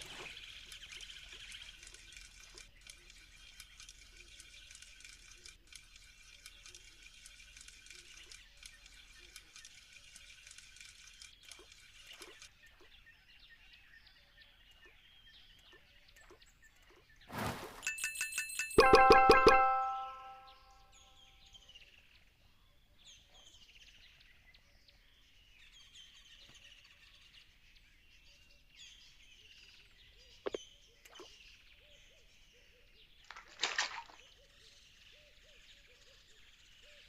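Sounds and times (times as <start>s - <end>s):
light ticks and patters: 0.0s - 13.0s.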